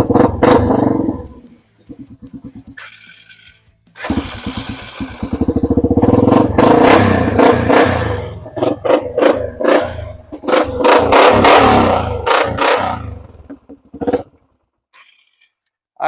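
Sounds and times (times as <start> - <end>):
engine running and revving: 0.0 - 3.0, 3.9 - 14.4
engine starter cranking: 4.0 - 14.5.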